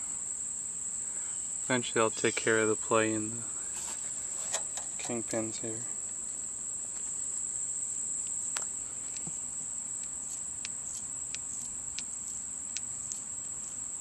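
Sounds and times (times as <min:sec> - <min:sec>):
insect chorus: 0:00.0 - 0:14.0.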